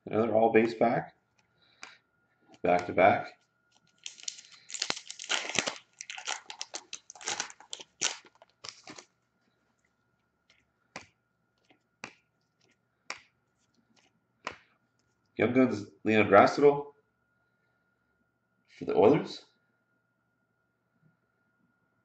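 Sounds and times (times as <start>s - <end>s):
wrapper tearing and crinkling: 3.8s - 9.1s.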